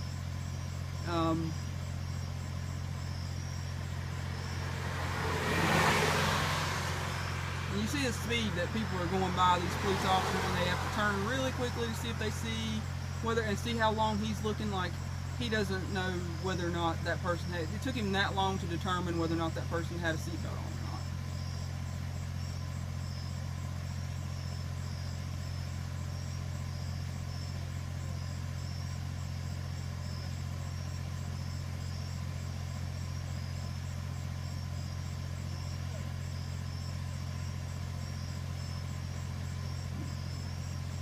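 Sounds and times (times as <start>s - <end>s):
car engine idling: 0.0s - 41.0s
insect chirping: 0.0s - 41.0s.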